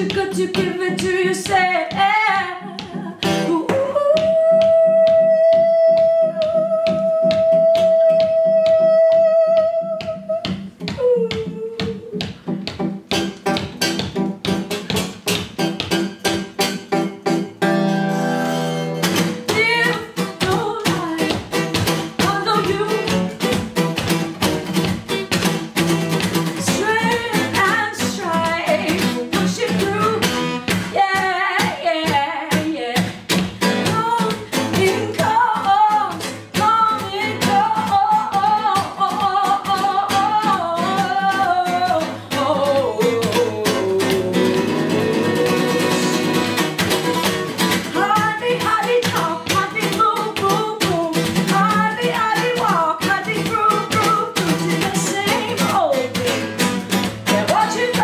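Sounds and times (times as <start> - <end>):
person singing wordless melody: 0.0 - 12.4, 30.9 - 46.6
acoustic guitar strumming: 0.0 - 58.0.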